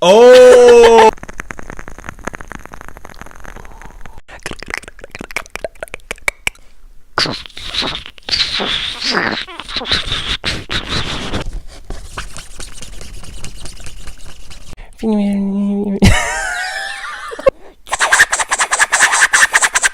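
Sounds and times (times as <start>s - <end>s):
scratchy scraping: 7.2s - 14.8s, 17.9s - 19.9s.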